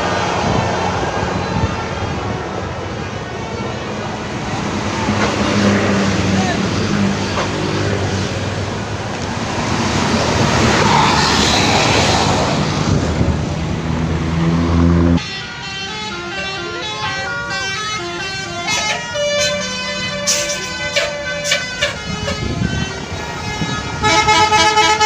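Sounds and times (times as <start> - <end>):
bus engine: 0.0 - 25.0
road noise: 0.0 - 25.0
multi-tone bus horn melody: 14.4 - 25.0.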